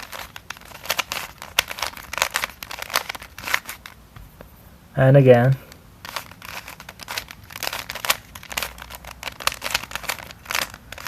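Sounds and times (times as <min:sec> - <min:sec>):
puzzle cube clicking: 0:00.0 - 0:04.0, 0:06.0 - 0:11.0.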